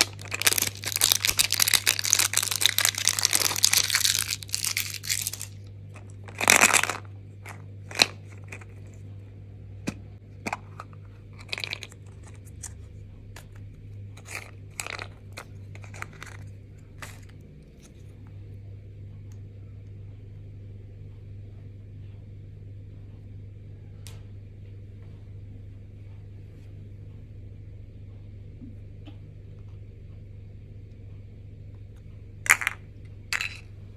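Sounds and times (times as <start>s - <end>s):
packaging crinkling and tearing: 0.0s - 7.0s
steady low hum: 0.0s - 33.9s.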